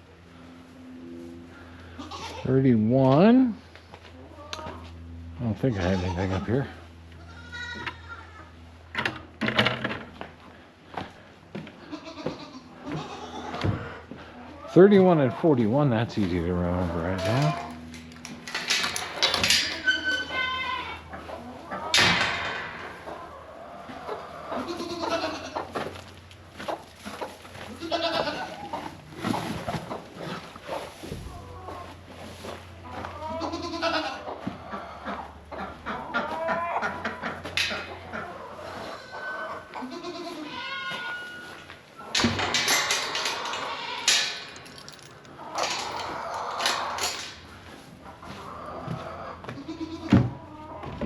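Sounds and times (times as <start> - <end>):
goat bleating: 1.9 - 2.5, 5.7 - 6.5, 7.1 - 8.6, 11.8 - 15.5, 16.8 - 17.8, 19.8 - 21.1, 24.4 - 25.8, 27.6 - 28.9, 32.9 - 34.3, 36.1 - 37.1, 38.3 - 41.5, 49.4 - 50.8
short high squeal: 41.0 - 41.6
rustling and clicks: 41.6 - 47.8.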